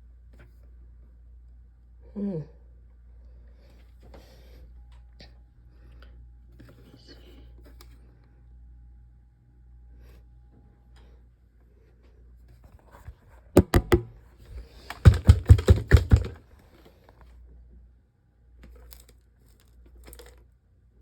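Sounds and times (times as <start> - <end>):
low steady hum: 0.0 - 21.0
sharp taps or knocks: 13.6 - 14.2, 14.9 - 16.4.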